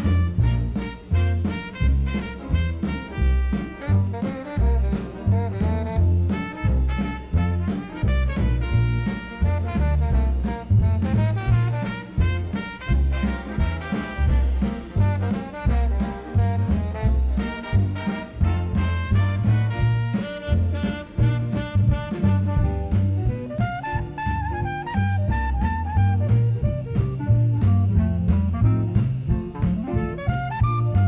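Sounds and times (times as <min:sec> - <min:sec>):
swing dance band music: 0:00.0 - 0:31.0.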